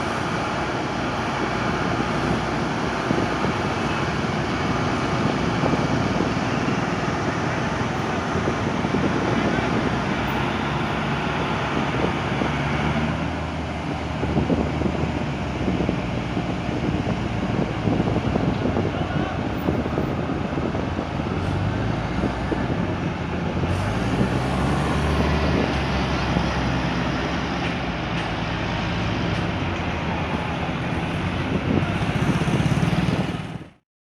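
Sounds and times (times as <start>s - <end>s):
fire truck engine running: 0.0s - 33.8s
road traffic noise: 0.0s - 33.8s.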